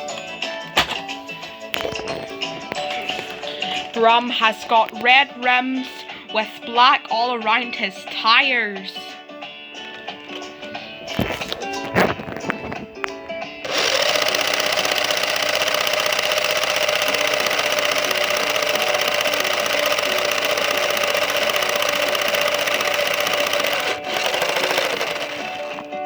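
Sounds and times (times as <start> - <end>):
background music: 0.0 - 26.0
toy car motor whirring: 13.6 - 25.8.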